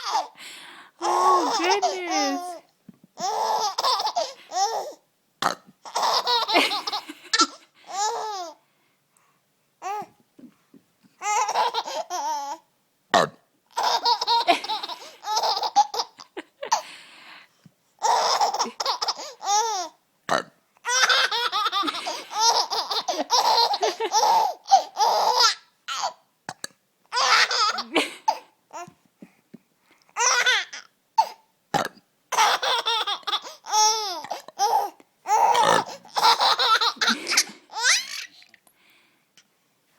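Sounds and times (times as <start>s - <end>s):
baby laughing: 0.0s - 0.4s, 1.0s - 2.6s, 3.2s - 5.0s, 5.8s - 8.6s, 11.2s - 12.6s, 13.7s - 16.8s, 18.0s - 20.0s, 20.8s - 26.2s, 27.1s - 28.9s, 30.2s - 31.4s, 32.3s - 38.5s.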